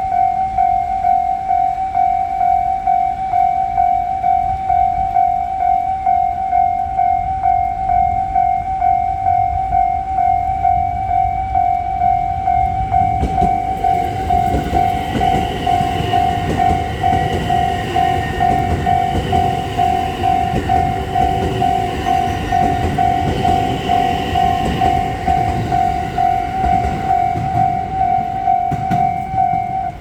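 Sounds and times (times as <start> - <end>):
level crossing bell ringing: 0.2 - 30.0
train rumbling and clattering: 10.4 - 30.0.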